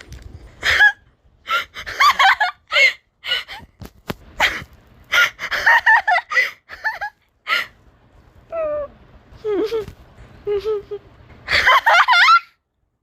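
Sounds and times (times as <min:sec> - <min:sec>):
person laughing hard: 0:00.6 - 0:03.5, 0:10.5 - 0:12.6.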